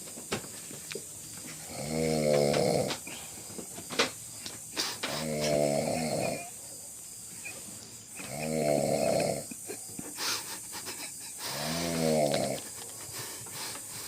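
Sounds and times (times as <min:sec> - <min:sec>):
man snoring: 0:01.6 - 0:03.3, 0:05.0 - 0:06.6, 0:08.2 - 0:09.6, 0:11.4 - 0:12.6.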